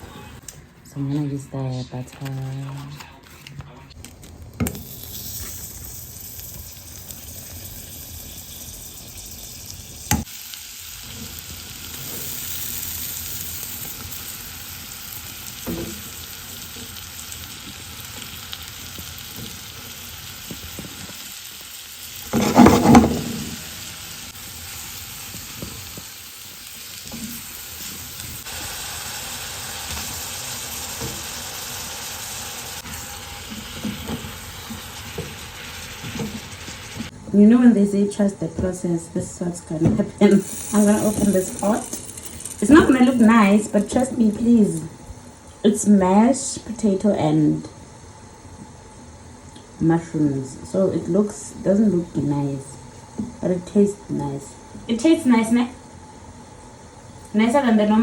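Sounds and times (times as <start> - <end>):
food sizzling in a pot: 4.6 - 37.1, 40.2 - 45.2.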